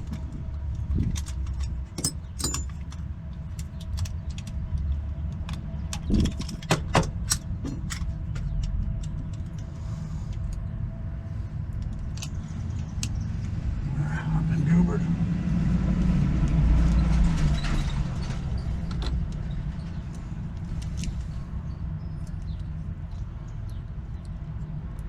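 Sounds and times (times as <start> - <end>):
steady low rumble: 0.0 - 25.0
keys jingling: 0.8 - 3.0
lock tools clicking in door lock: 1.1 - 4.6, 5.4 - 9.5.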